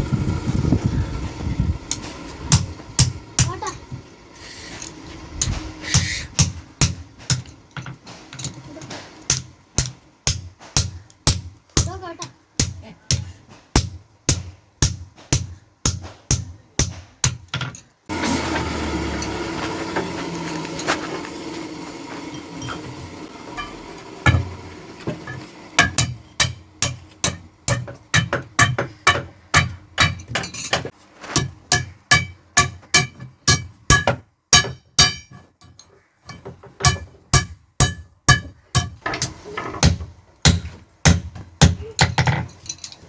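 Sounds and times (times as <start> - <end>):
hammer striking metal on anvil: 2.5 - 3.6, 5.9 - 7.6, 9.3 - 12.0, 12.6 - 17.8, 23.5 - 24.5, 25.2 - 42.1.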